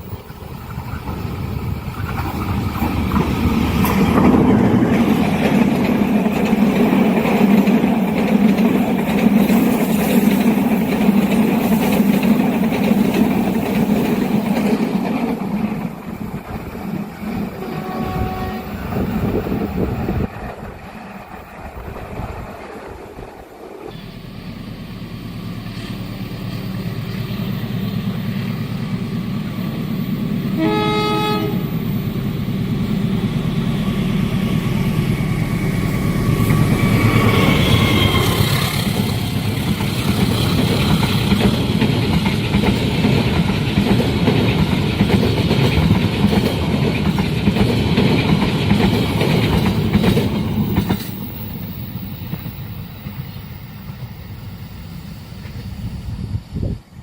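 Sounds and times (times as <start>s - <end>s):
train passing with heavy rumble: 0.0s - 57.0s
train horn: 17.5s - 19.1s, 30.5s - 31.8s, 37.3s - 38.6s.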